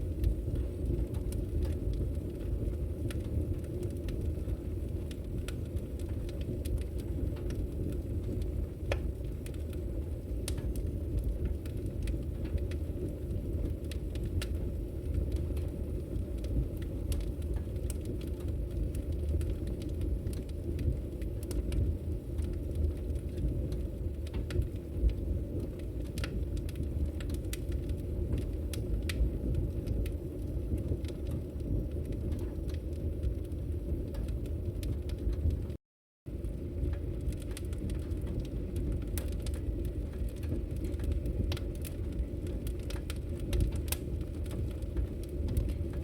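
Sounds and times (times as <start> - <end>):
burning wood crackling: 0.0 - 46.0
fire flames rumbling: 0.0 - 46.0.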